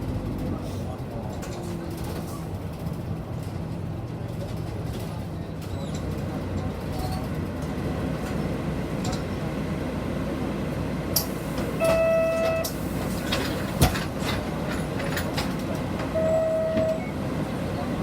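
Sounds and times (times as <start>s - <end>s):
bus engine rumbling: 0.0s - 18.0s
road noise: 0.0s - 18.0s
short electronic beeps: 11.8s - 12.7s, 16.2s - 17.2s.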